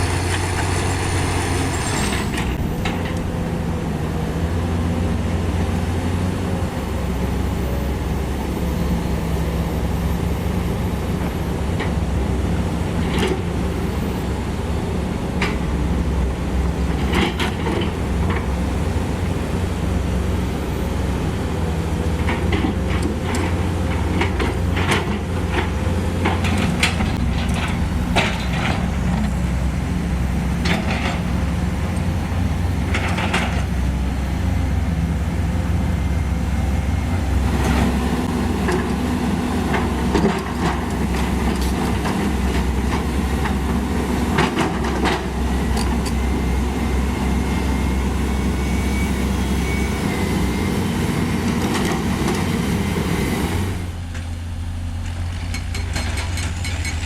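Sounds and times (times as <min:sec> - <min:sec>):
heavy diesel engine under load: 0:00.0 - 0:57.0
metallic clanks: 0:55.0 - 0:57.0.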